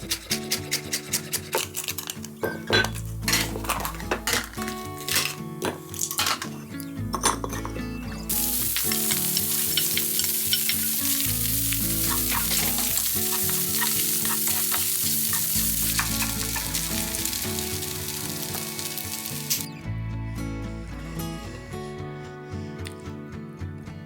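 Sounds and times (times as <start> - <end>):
background music: 0.0 - 24.0
food sizzling in a pan: 8.3 - 19.7.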